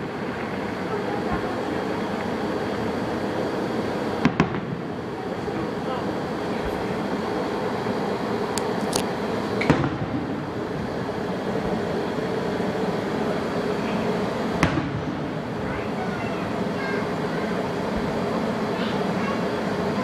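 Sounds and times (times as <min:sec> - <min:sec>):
distant fireworks bangs: 0:00.0 - 0:05.7, 0:09.5 - 0:12.7, 0:13.6 - 0:19.9
background rumble and hiss: 0:00.0 - 0:20.0.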